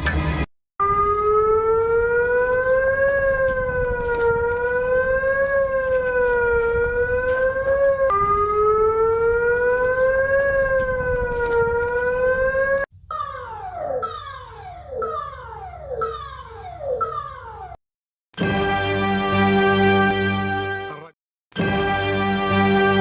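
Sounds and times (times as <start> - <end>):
warning siren wailing: 0.8 - 17.8.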